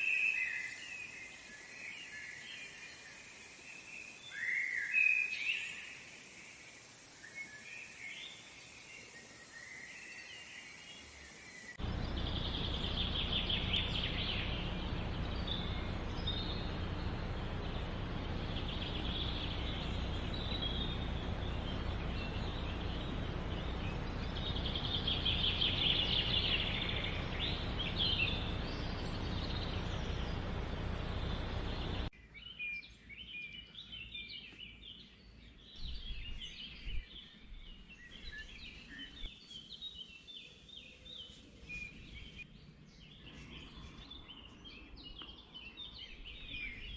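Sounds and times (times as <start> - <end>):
birds calling: 9.5 - 46.9
steady rushing outdoor noise: 11.8 - 32.1
high bird chirps: 11.8 - 32.6.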